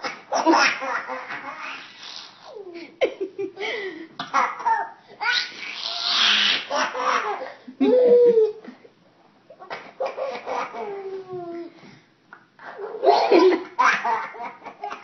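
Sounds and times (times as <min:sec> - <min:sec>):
baby laughing and babbling: 0:04.3 - 0:08.7, 0:09.6 - 0:11.9, 0:12.7 - 0:15.0.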